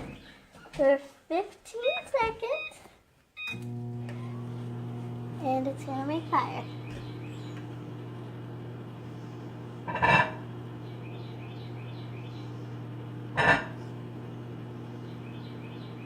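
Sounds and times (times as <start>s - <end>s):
microwave oven humming: 3.4s - 16.0s.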